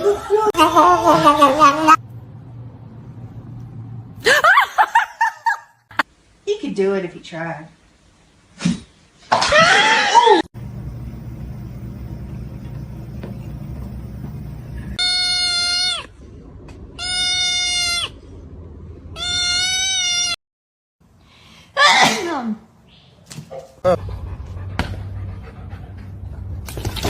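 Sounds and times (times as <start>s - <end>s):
cat meowing: 15.0s - 16.1s, 17.0s - 18.2s, 19.2s - 20.4s.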